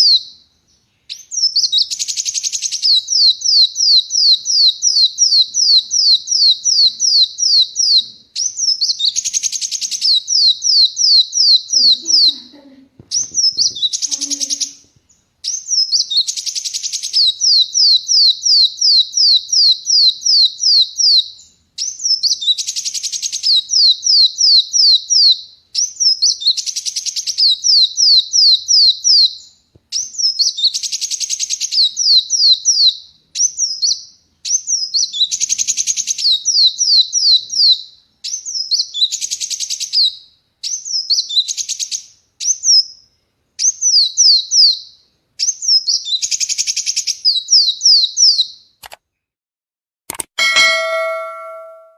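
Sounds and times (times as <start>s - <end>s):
sunbird singing: 0.0s - 43.1s, 50.4s - 51.9s.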